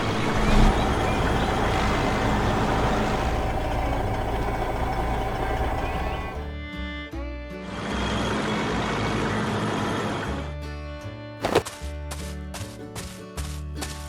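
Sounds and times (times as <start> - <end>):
heavy vehicle engine rumbling: 0.0 - 6.6.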